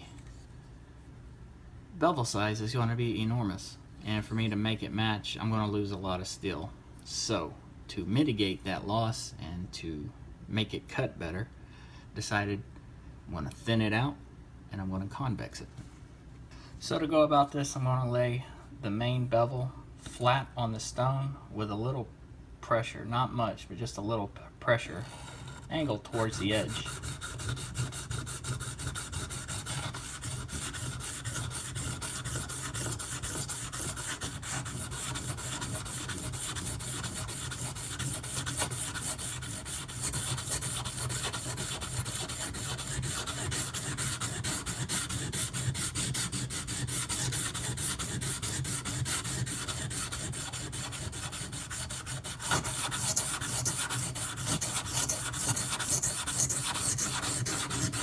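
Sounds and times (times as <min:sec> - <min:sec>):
knife blade scraping on whetstone: 0:25.1 - 0:58.0.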